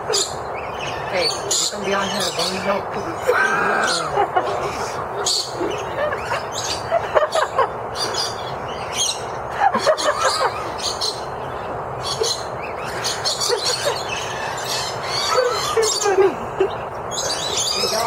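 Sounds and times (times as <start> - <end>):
small birds chattering and chirping: 0.0 - 18.0
steady background hiss: 0.0 - 18.0.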